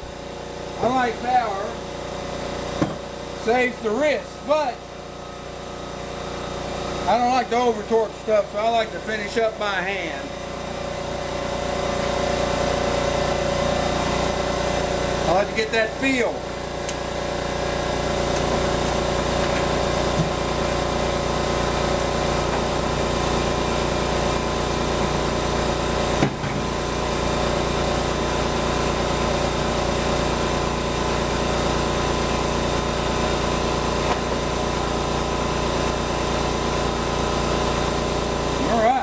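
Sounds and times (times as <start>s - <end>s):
air compressor running: 0.0s - 39.0s
brief knock: 2.8s - 3.0s.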